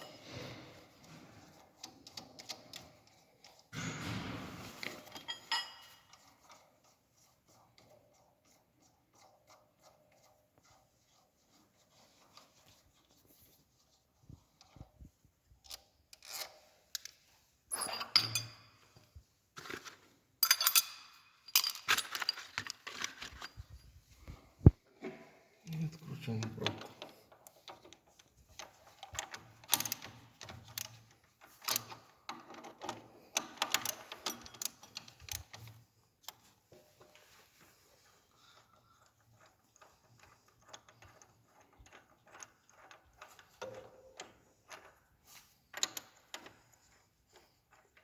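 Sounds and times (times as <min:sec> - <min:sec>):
metal hand tools clinking and scraping: 0:05.0 - 0:06.4, 0:17.7 - 0:18.9, 0:20.4 - 0:23.8.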